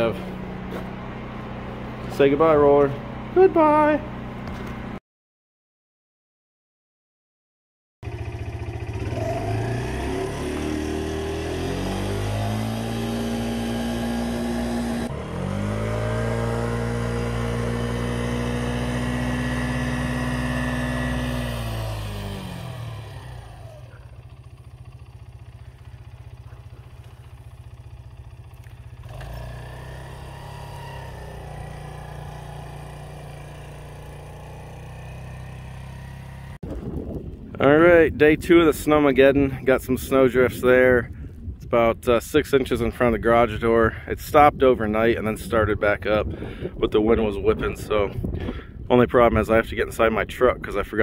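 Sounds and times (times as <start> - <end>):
engine accelerating through gears: 8.0 - 36.8.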